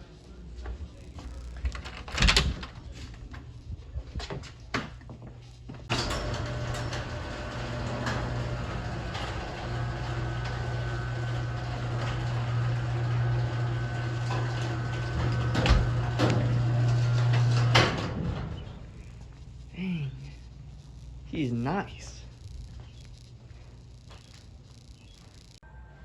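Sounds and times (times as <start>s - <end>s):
motor humming: 5.9s - 21.3s.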